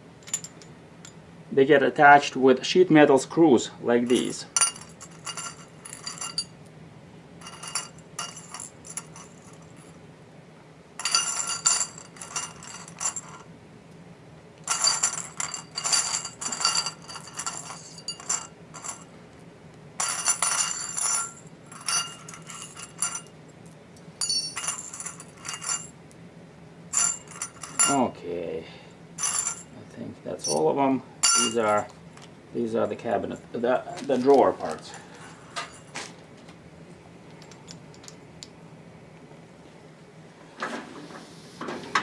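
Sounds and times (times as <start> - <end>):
metal screws clinking in a bowl: 0.2 - 0.7, 4.1 - 6.5, 7.4 - 10.0, 11.0 - 13.5, 14.7 - 19.1, 20.0 - 23.4, 24.2 - 25.9, 26.9 - 28.1, 29.2 - 29.7, 31.2 - 31.9.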